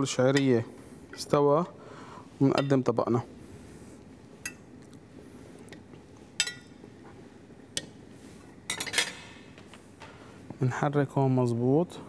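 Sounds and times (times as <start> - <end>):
metal utensil clinking on pot: 2.5 - 2.9, 6.4 - 6.8, 8.7 - 9.3.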